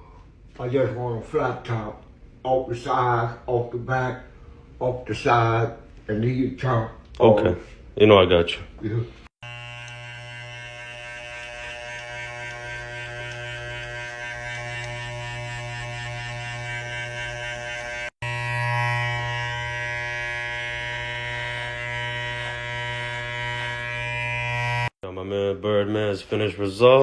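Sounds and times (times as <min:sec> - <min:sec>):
electric hair clippers buzzing: 0:09.4 - 0:25.0.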